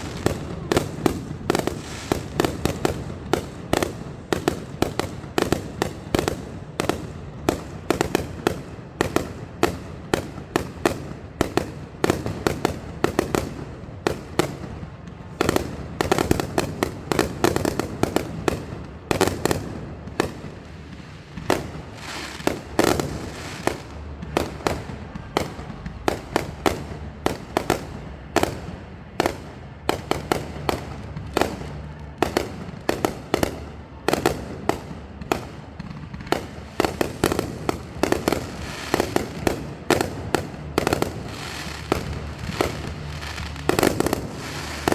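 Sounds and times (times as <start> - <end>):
fireworks bangs and pops: 0.0 - 44.9.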